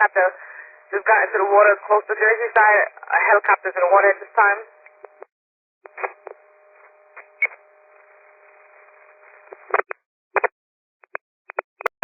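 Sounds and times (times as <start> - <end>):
faint steady hum: 0.0 - 5.3, 5.9 - 9.8
radio click: 4.8 - 5.3, 5.9 - 7.6
radio squelch bursts: 5.9 - 10.5
radio static hiss: 5.9 - 10.5.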